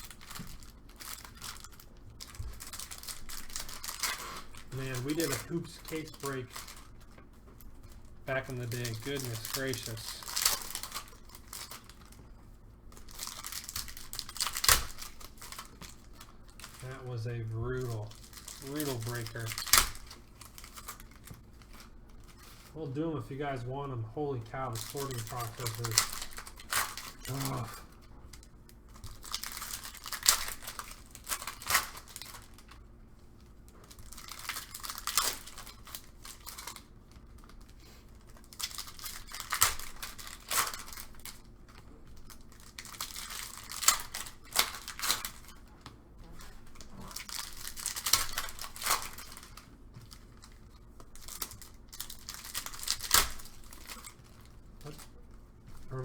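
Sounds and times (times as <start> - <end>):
wrappers tearing and crinkling: 0.0 - 56.0.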